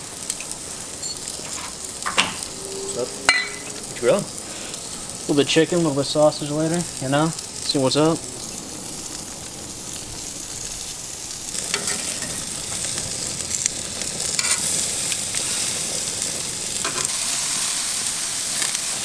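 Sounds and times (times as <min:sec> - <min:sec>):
chicken sizzling on grill: 0:00.0 - 0:19.0.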